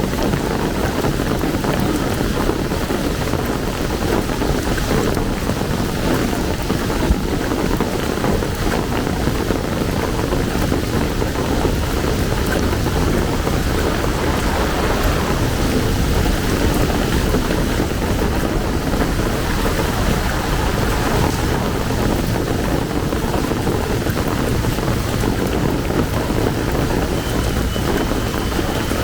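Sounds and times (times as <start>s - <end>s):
heavy rain pouring: 0.0s - 29.0s
low rumble: 8.3s - 29.0s.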